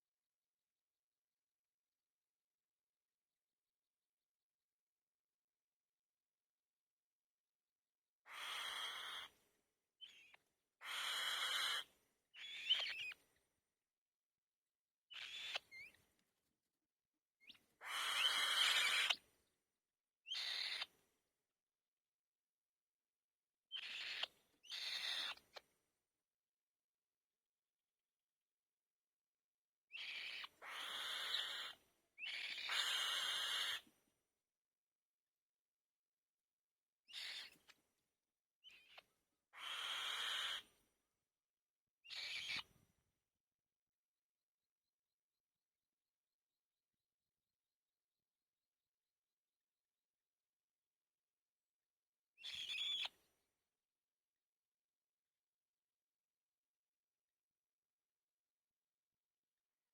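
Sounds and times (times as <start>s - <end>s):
bird chicks hissing begging calls: 8.3s - 9.3s, 10.8s - 11.8s, 17.8s - 19.2s, 30.1s - 33.8s, 39.6s - 40.6s
chick squeak: 30.0s - 33.8s.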